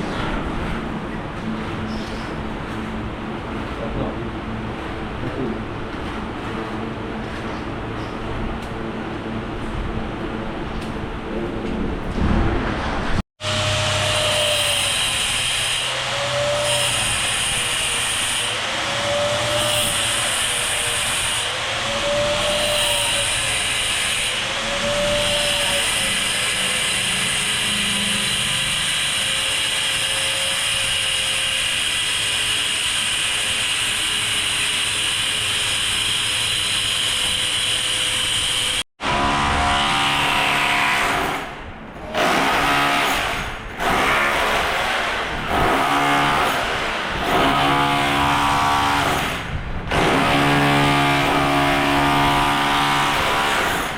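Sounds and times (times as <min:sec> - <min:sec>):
machine with pitched hum: 0:00.0 - 0:53.9
power tool running: 0:13.4 - 0:53.9.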